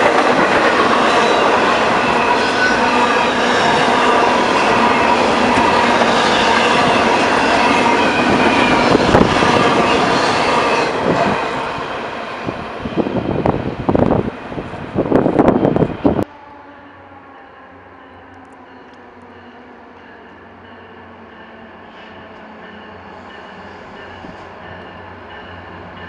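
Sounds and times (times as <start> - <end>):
gusty bursts: 0.0 - 16.2
train rumbling past: 0.0 - 26.0.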